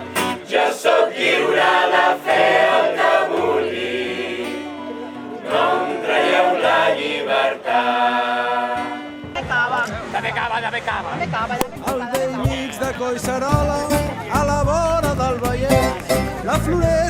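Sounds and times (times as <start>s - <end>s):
choir singing in parts: 0.0s - 9.2s.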